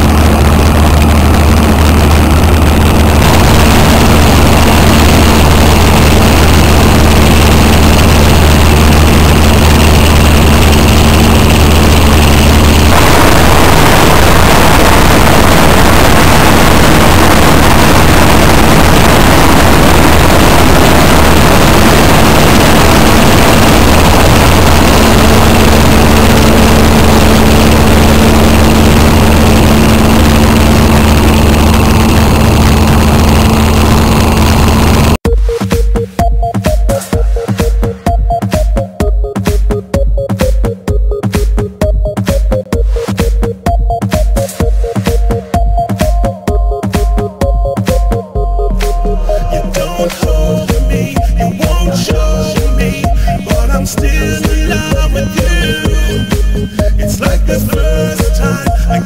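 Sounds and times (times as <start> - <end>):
heavy farm machine engine running: 0.0 - 35.2.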